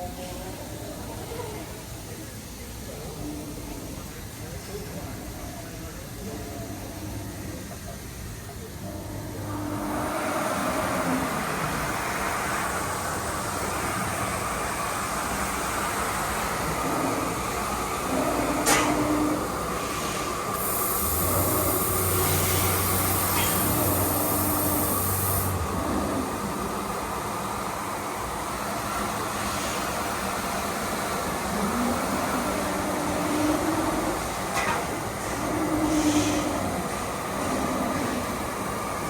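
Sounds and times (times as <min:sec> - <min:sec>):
machinery running: 0:08.8 - 0:27.1.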